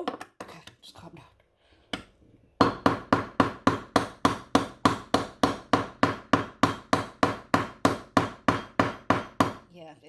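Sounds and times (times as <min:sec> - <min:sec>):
hammer striking glass jar: 0:02.6 - 0:09.6.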